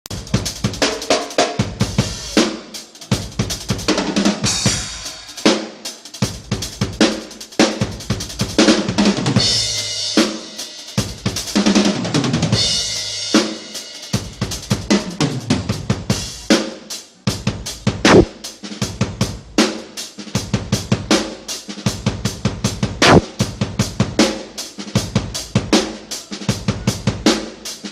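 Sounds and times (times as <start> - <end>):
kick drum and snare: 17.4 - 18.4, 22.0 - 24.4.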